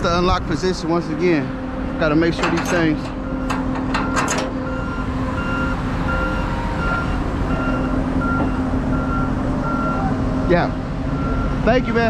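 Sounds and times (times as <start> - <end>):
truck engine droning: 0.0 - 12.0
vehicle backup alarm beeping: 2.6 - 12.0.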